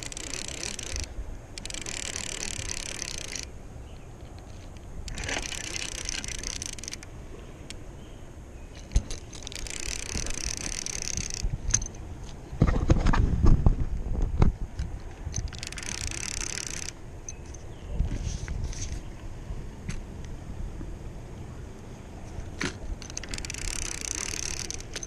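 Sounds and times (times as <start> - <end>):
fishing reel whirring: 0.0 - 3.5, 4.4 - 7.1, 8.8 - 12.0, 15.4 - 17.4, 23.0 - 25.0.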